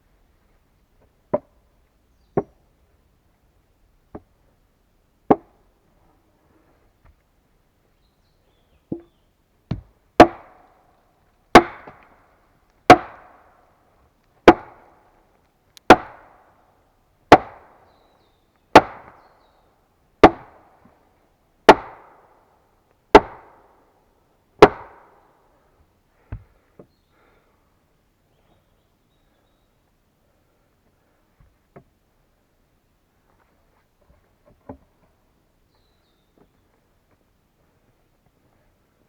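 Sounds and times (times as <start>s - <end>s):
axe chopping wood: 5.3s - 5.5s, 9.7s - 10.6s, 11.5s - 12.2s, 12.9s - 13.4s, 14.4s - 14.9s, 15.8s - 16.4s, 17.3s - 17.8s, 18.7s - 19.2s, 20.2s - 20.7s, 21.7s - 22.2s, 23.1s - 23.6s, 24.6s - 25.1s.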